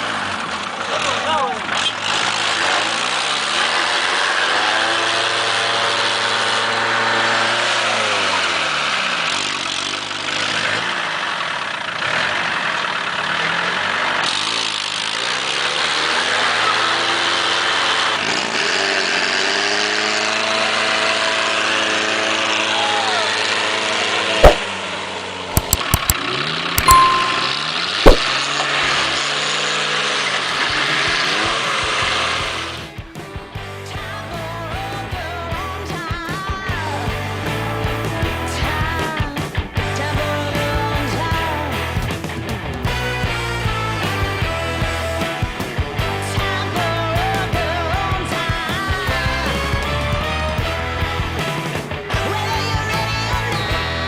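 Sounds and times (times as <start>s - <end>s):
engine revving hard: 0.0s - 22.7s
sharp knocks: 26.8s - 28.3s.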